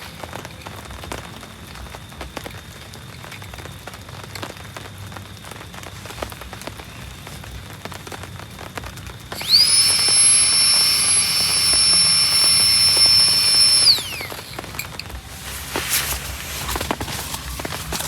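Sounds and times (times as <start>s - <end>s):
rain pattering: 0.0s - 10.4s, 13.9s - 18.0s
small electric motor whining: 9.3s - 18.0s.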